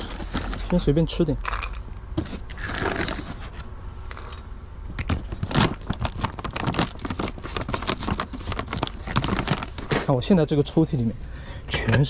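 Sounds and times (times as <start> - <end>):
plastic crinkling: 0.0 - 3.6, 5.0 - 10.1.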